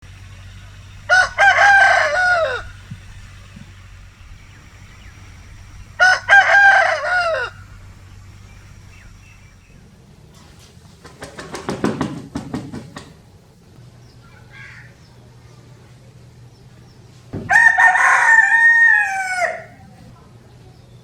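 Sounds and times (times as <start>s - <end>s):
rooster crowing: 1.1s - 3.0s, 5.8s - 8.1s, 17.4s - 20.0s.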